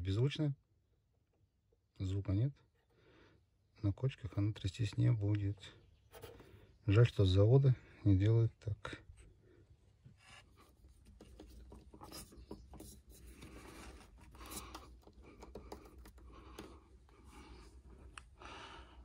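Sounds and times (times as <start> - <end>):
handling noise rubbing and scratching: 10.0 - 18.0.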